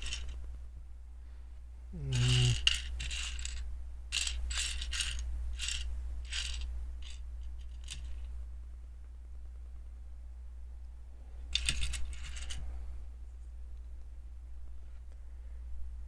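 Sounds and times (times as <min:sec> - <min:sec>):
steady low hum: 0:00.0 - 0:16.0
person humming: 0:01.9 - 0:02.7
plastic bricks clicking and clattering: 0:04.2 - 0:07.2, 0:11.6 - 0:12.6.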